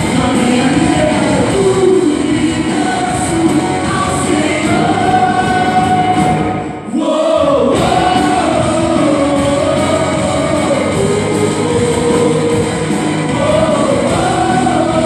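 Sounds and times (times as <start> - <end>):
full band playing: 0.0 - 15.0
group singing worship song: 0.0 - 15.0.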